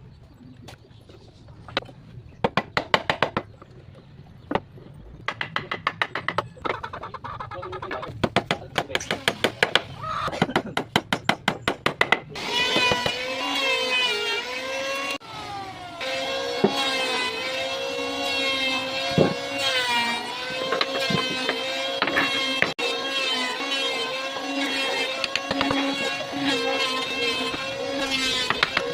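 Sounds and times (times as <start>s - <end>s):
small electric motor whining: 12.4s - 28.9s.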